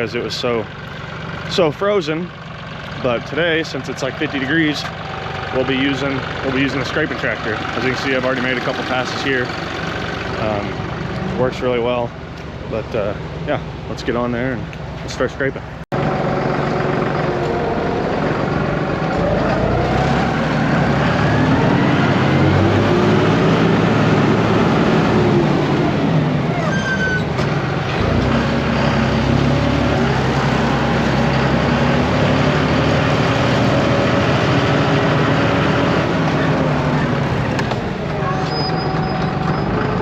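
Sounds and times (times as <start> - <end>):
tractor engine under load: 0.0 - 13.9, 15.7 - 40.0
short high squeal: 26.5 - 27.4, 38.2 - 40.0.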